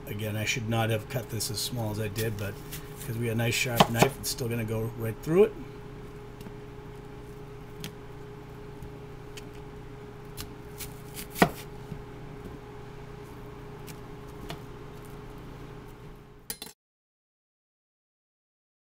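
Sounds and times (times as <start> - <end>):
steady background hum: 0.0 - 16.7
knife tapping a cutting board: 3.8 - 4.1.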